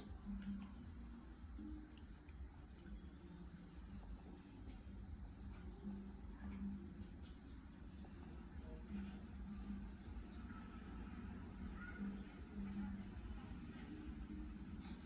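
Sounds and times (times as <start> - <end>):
high-pitched insect drone: 0.0 - 15.0
insects trilling in pulses: 4.9 - 13.4.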